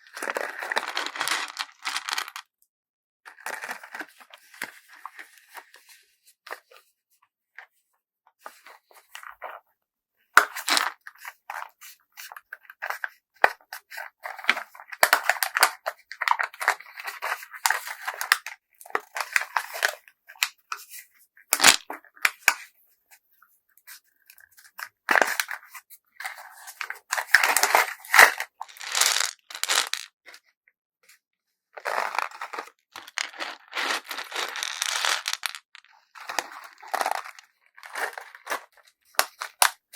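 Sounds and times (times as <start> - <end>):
packaging crinkling and tearing: 0.1 - 2.4, 27.6 - 30.1, 31.9 - 38.6.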